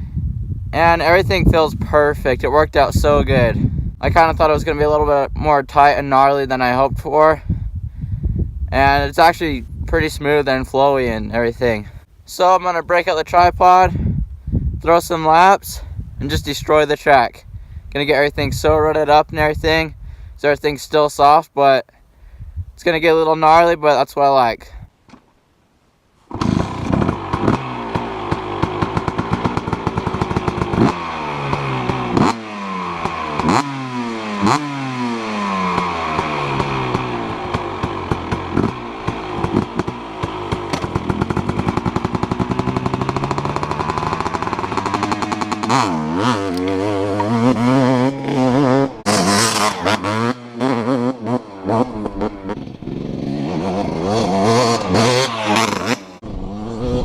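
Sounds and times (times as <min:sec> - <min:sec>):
dirt bike engine revving: 0:26.3 - 0:57.0.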